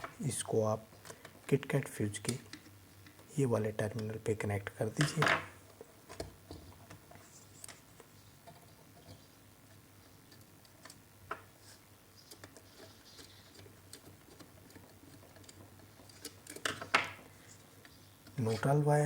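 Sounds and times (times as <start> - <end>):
clicks and taps of screwing wire: 12.3 - 17.1.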